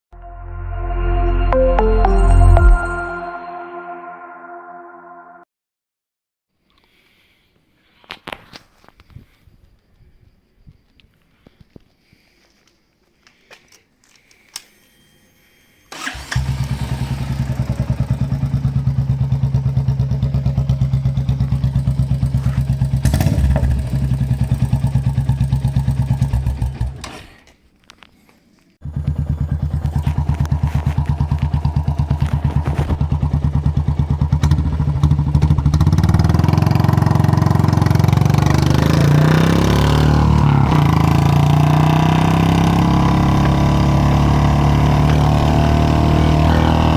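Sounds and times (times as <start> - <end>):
motorcycle engine idling: 16.4 - 27.0, 28.8 - 39.0.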